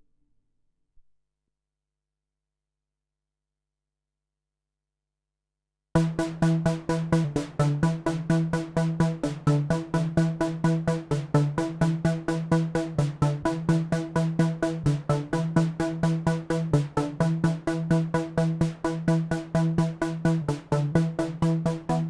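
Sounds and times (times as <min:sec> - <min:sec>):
synthesizer sequenced pulse: 0:06.0 - 0:22.0.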